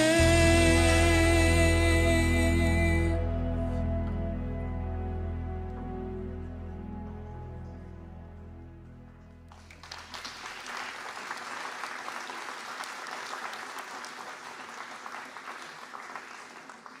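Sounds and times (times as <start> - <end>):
audience applause: 9.5 - 17.0.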